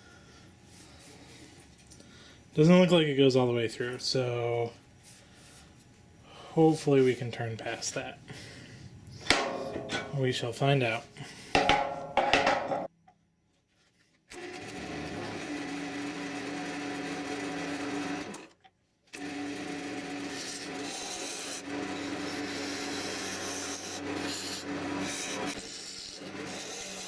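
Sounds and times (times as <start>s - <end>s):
wood lathe humming: 14.3s - 18.5s, 19.2s - 27.0s
lathe tool cutting hiss: 20.1s - 27.0s.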